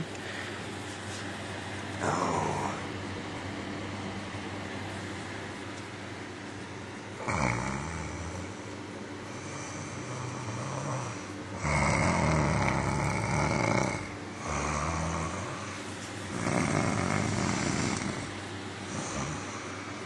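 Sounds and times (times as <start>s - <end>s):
person snoring loudly: 2.0s - 2.9s, 7.2s - 8.6s, 9.3s - 18.3s, 18.9s - 19.7s.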